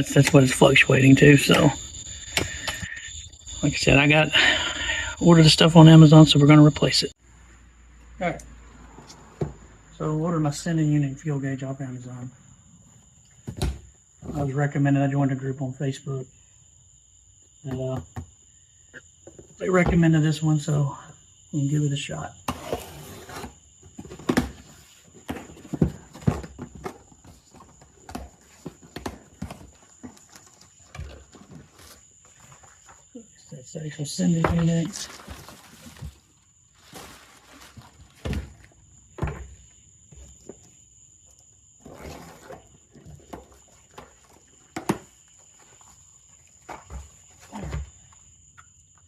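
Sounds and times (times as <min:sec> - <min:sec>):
boxed parts handling clatter: 0:23.9 - 0:33.1, 0:34.5 - 0:39.5
packaging rustling: 0:34.5 - 0:38.6.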